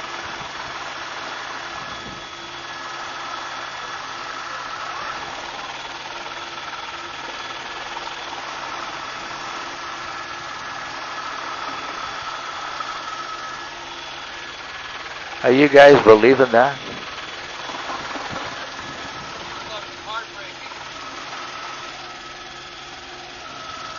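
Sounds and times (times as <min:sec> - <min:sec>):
helicopter engine and rotor drone: 0:00.0 - 0:23.9
helicopter whine: 0:00.0 - 0:23.9.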